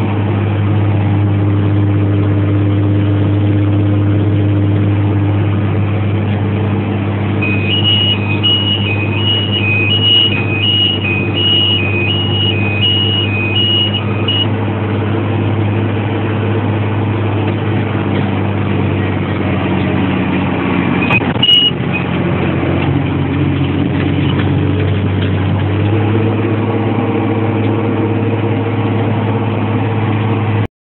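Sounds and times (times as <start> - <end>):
tractor engine running: 0.0 - 30.7
short beep: 7.4 - 14.5, 21.0 - 21.8
two-tone electronic warning beeper: 7.4 - 14.5, 21.0 - 21.8.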